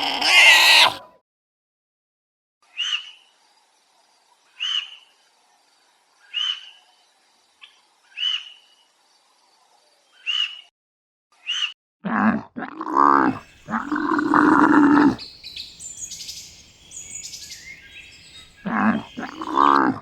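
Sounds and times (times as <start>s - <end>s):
animal short high call: 0.0s - 1.1s.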